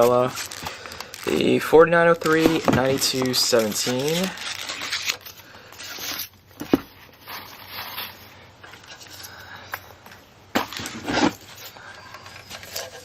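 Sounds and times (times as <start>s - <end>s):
packing peanuts rustling: 0.0s - 6.4s.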